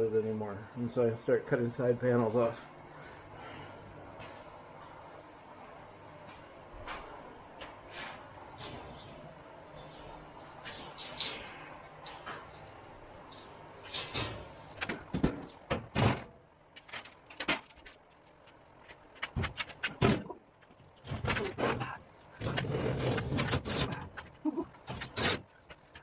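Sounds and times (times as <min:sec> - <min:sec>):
steady low hum: 0:00.0 - 0:26.0
clunks and knocks: 0:14.2 - 0:18.0.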